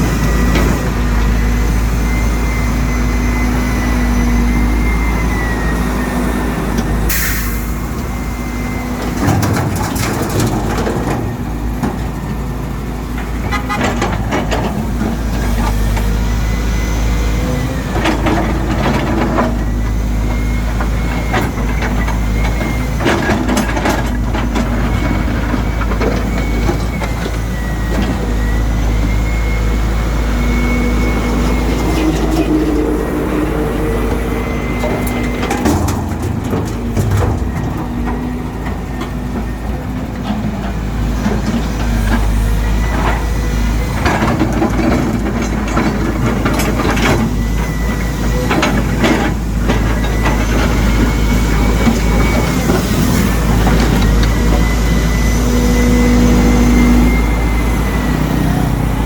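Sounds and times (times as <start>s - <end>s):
high hydraulic whine: 0.0s - 8.7s, 25.0s - 38.9s
excavator diesel engine running: 0.0s - 59.0s.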